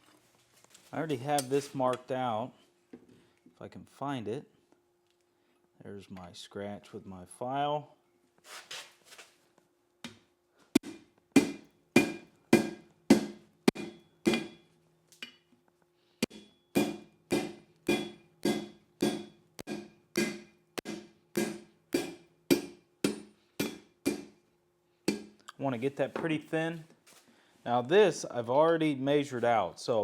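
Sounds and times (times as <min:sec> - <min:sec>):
hammer striking steel on anvil: 0:10.8 - 0:15.4, 0:16.2 - 0:24.4, 0:25.1 - 0:25.4.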